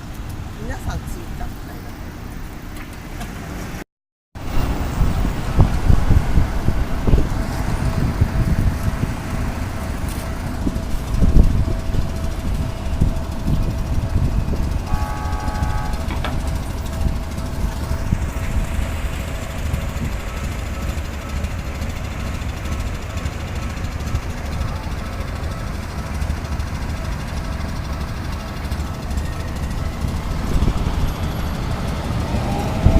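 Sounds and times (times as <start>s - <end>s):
road traffic rumble: 0.0s - 3.8s, 4.4s - 32.9s
short horn-like tone: 12.6s - 18.7s.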